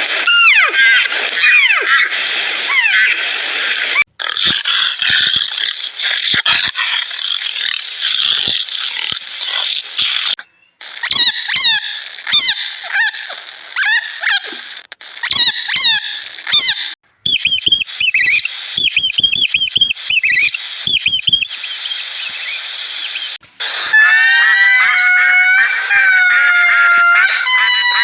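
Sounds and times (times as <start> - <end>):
high-pitched bird chirping: 4.2 - 12.6, 15.2 - 23.9.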